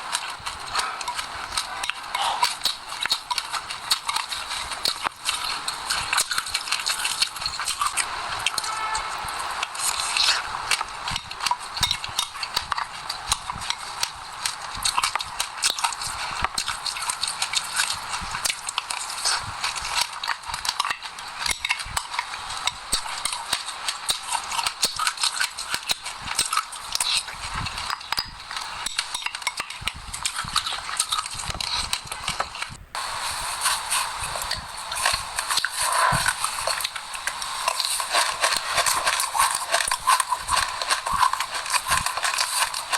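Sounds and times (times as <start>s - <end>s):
chewing seeds crunching: 0.0s - 42.9s.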